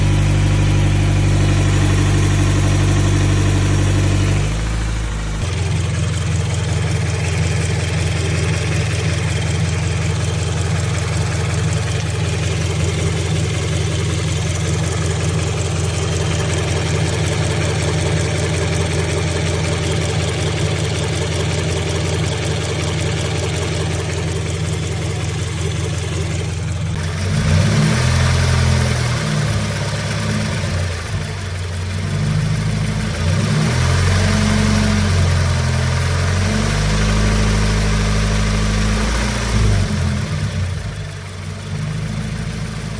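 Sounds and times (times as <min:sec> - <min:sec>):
car engine idling: 0:00.0 - 0:42.9.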